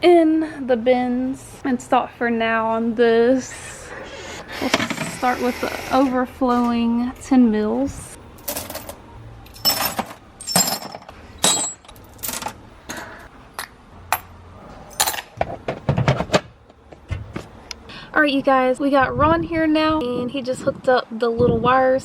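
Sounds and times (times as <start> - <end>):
metal bolts clinking into bins: 8.4 - 12.6, 14.9 - 15.4.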